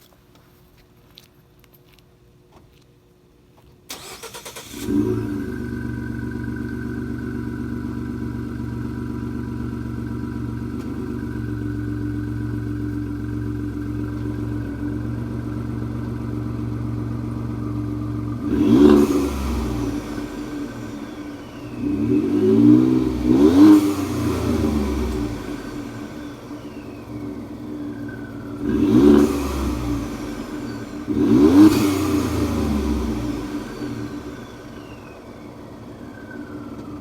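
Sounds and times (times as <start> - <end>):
car engine idling: 3.9 - 37.0
engine rev blip: 18.4 - 37.0.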